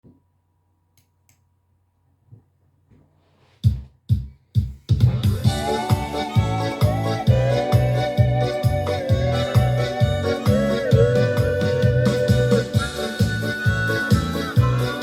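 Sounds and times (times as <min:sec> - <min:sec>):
drum-machine beat: 0:03.6 - 0:15.0
held keyboard chords: 0:04.9 - 0:15.0.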